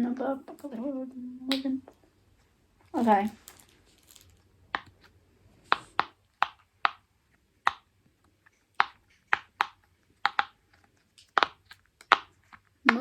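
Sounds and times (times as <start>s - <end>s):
fidget toy bubbles popping: 8.8s - 10.6s, 11.2s - 13.0s.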